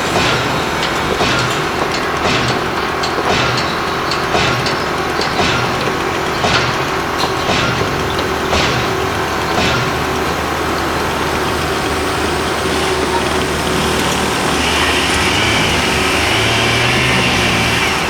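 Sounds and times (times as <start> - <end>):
dense clatter: 0.0 - 18.0
machinery engine running: 0.0 - 18.0
high machine whine: 6.6 - 18.0.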